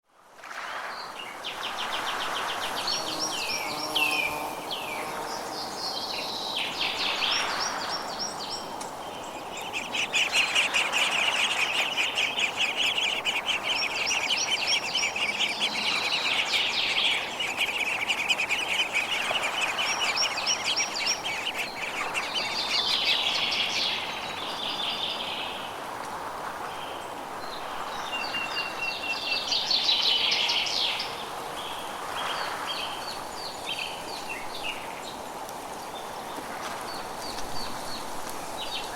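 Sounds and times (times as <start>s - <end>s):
faint steady background hiss: 0.1s - 38.9s
songbirds trilling and chirping: 1.0s - 25.8s.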